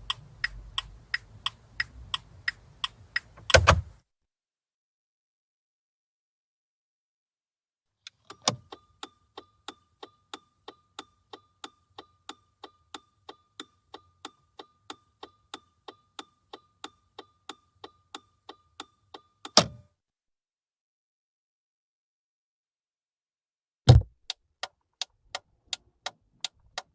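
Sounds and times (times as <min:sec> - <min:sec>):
turn-signal stalk click: 0:00.0 - 0:03.8
indicator relay ticking: 0:00.0 - 0:04.0, 0:08.6 - 0:19.6.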